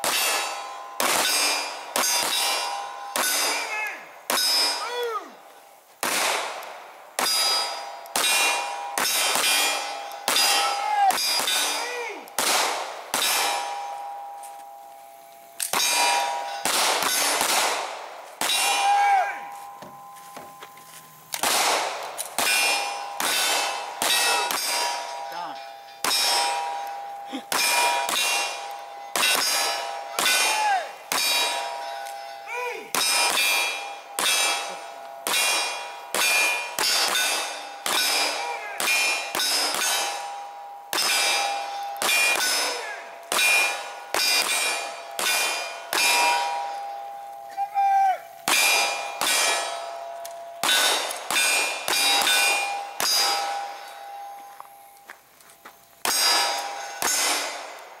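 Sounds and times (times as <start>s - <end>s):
pistol shots: 0.0s - 3.7s, 6.0s - 13.8s, 15.6s - 18.8s, 21.3s - 25.1s, 26.0s - 26.6s, 27.5s - 30.5s, 31.1s - 31.7s, 32.9s - 40.2s, 40.9s - 46.5s, 50.6s - 53.6s, 56.0s - 57.9s
steel target clanging: 0.0s - 5.1s, 7.2s - 14.8s, 15.5s - 47.3s, 48.4s - 54.6s, 56.0s - 58.0s.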